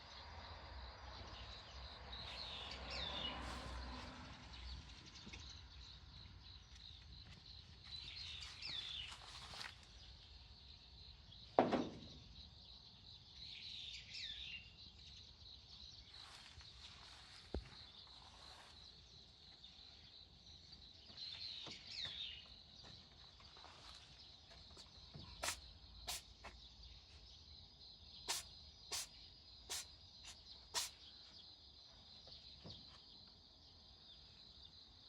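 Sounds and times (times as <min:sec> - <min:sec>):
cat sneezing: 0:25.4 - 0:26.3, 0:28.3 - 0:29.1, 0:29.7 - 0:31.0
high insect drone: 0:25.4 - 0:26.6, 0:28.2 - 0:31.0.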